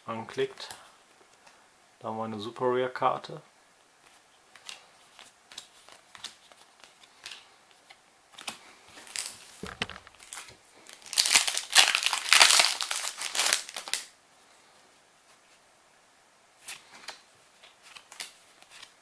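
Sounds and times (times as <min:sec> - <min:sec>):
foil wrapper crinkling: 0:09.0 - 0:14.1.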